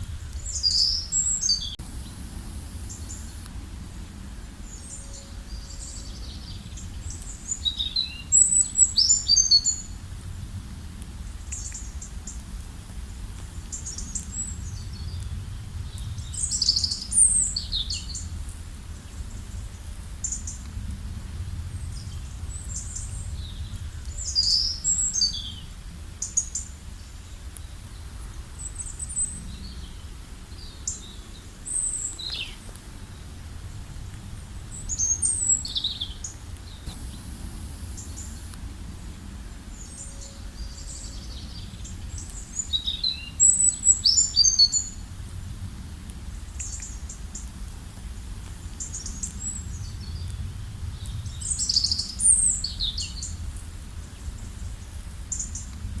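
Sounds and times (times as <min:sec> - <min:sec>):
wild birds chirping: 0:00.2 - 0:10.0, 0:34.7 - 0:45.0
low rumble: 0:36.7 - 0:42.2.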